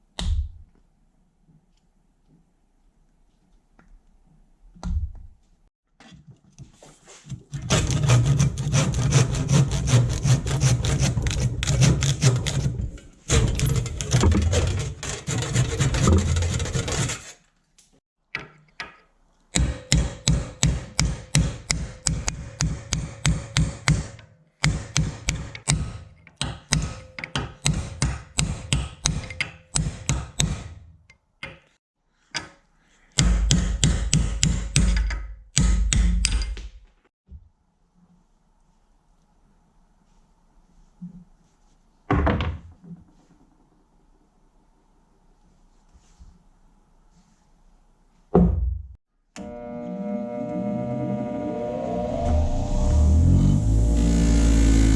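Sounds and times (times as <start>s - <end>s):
hand tool scrubbing metal: 7.5s - 17.4s.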